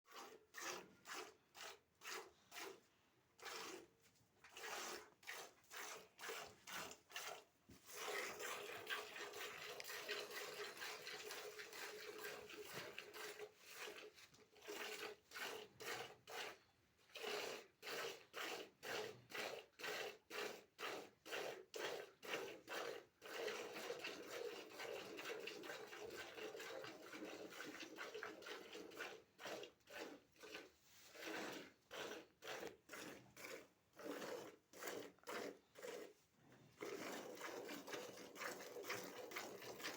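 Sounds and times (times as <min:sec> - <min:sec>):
milk squirting into a pail: 0:00.1 - 0:39.9.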